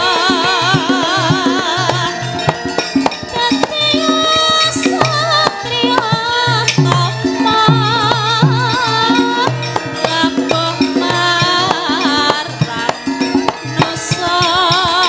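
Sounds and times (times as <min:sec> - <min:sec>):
woman singing long wavering notes: 0:00.0 - 0:02.4, 0:03.3 - 0:15.0
gamelan music: 0:00.0 - 0:15.0
hand drum strokes: 0:00.0 - 0:15.0.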